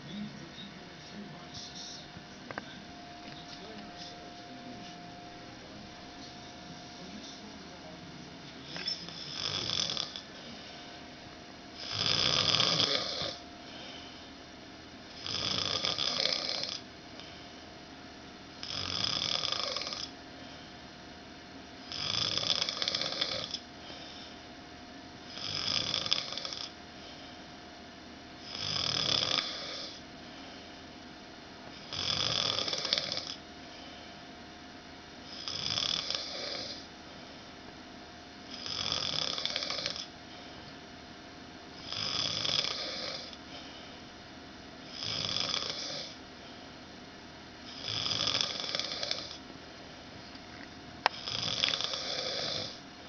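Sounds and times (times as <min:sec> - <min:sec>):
man snoring loudly: 0:09.1 - 0:10.3, 0:11.8 - 0:13.4, 0:15.2 - 0:16.8, 0:18.6 - 0:20.1, 0:21.8 - 0:23.6, 0:25.3 - 0:26.8, 0:28.4 - 0:30.0, 0:31.8 - 0:33.4, 0:35.3 - 0:36.9, 0:38.5 - 0:40.1, 0:41.8 - 0:43.4, 0:44.9 - 0:46.2, 0:47.7 - 0:49.4, 0:51.1 - 0:52.8.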